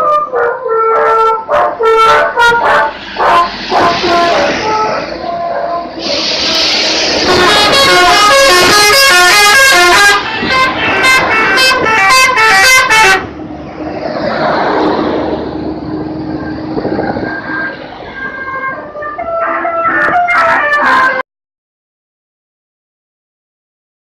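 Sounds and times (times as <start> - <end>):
musical multi-tone bus horn: 0.0 - 13.5, 16.2 - 21.2
steady rushing noise with hum: 2.3 - 8.6, 13.2 - 18.4.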